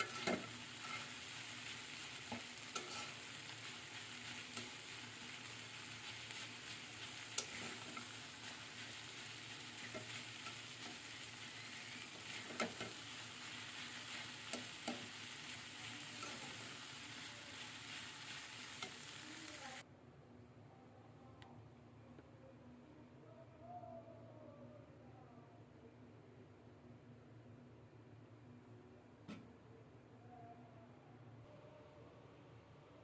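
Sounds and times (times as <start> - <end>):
spatula scraping a pan: 0.0 - 19.2
food sizzling in oil: 0.0 - 19.8.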